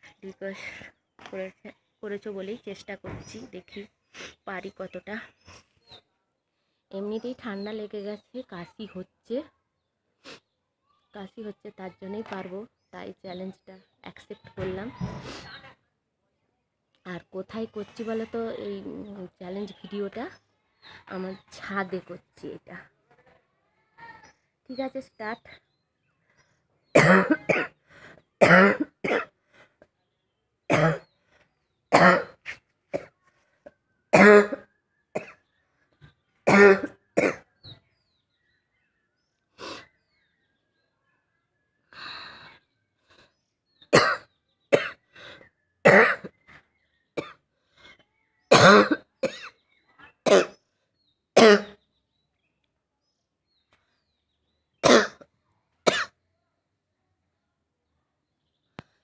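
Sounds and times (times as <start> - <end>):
person coughing: 27.0 - 27.8, 28.4 - 29.3, 48.5 - 49.5
soft drawn-out breath: 27.8 - 28.3.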